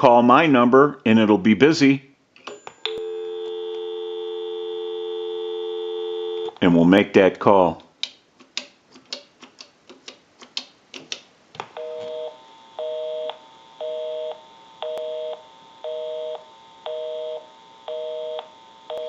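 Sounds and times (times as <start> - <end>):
telephone busy signal: 2.5 - 6.6, 11.8 - 19.0.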